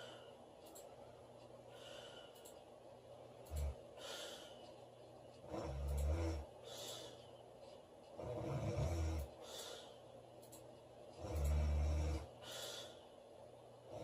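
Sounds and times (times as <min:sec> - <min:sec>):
woman snoring: 0:08.2 - 0:09.3, 0:11.2 - 0:12.3.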